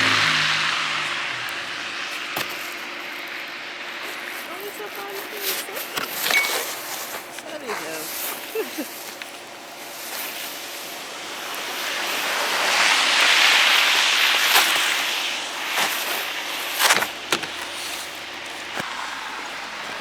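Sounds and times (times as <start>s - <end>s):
vehicle passing: 0.0s - 3.9s.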